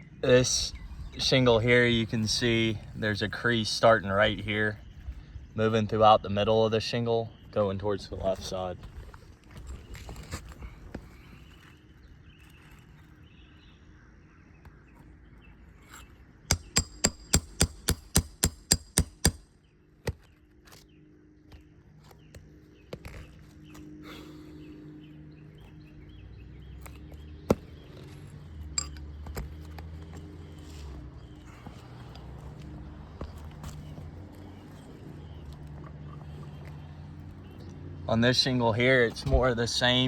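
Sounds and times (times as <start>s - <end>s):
hammer striking metal pry bar: 16.5s - 19.5s, 28.7s - 29.6s.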